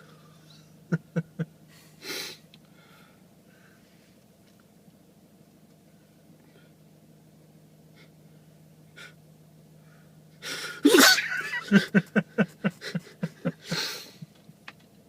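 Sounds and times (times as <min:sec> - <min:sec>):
voiced gasping spasms: 0:09.8 - 0:10.9, 0:12.8 - 0:14.3
man sneezing: 0:10.5 - 0:11.2, 0:13.6 - 0:14.2.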